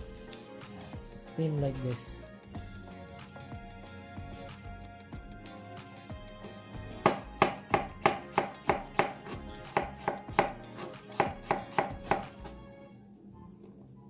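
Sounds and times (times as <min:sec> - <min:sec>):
knife chopping on a board: 0:07.0 - 0:12.6.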